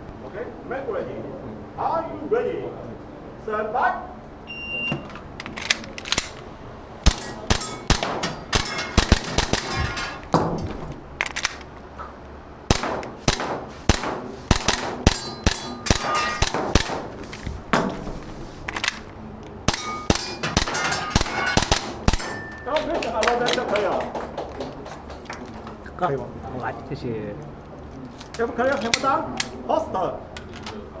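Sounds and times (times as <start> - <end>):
steel targets clanging: 4.9 - 11.8, 12.7 - 19.1, 19.7 - 25.9, 28.1 - 29.6
airsoft pistol shots: 5.4 - 11.7, 12.7 - 19.1, 19.7 - 24.0.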